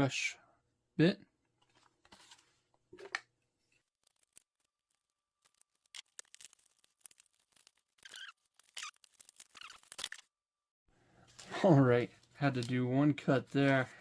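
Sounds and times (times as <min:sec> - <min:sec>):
packaging crinkling and clicking: 0:04.0 - 0:10.2.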